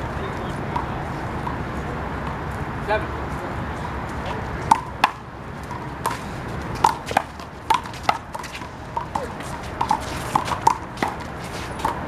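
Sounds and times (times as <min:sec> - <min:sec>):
handball hitting wall and court: 0:04.7 - 0:06.2, 0:06.8 - 0:12.0.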